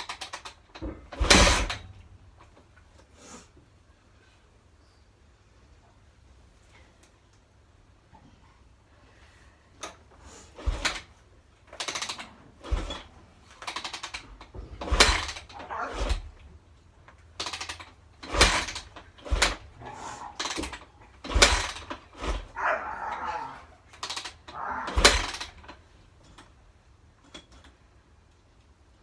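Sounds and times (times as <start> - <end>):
engine turning over with a thump: 0.0 - 2.9, 9.8 - 26.5
motorcycle engine being kick-started: 0.0 - 2.9, 9.8 - 26.6.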